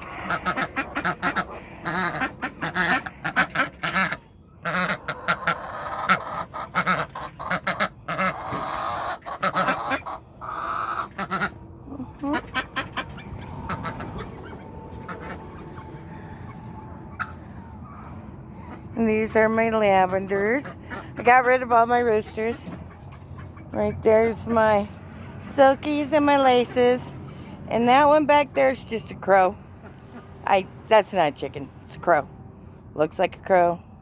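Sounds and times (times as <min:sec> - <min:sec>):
ducks quacking and honking: 0:00.0 - 0:24.9.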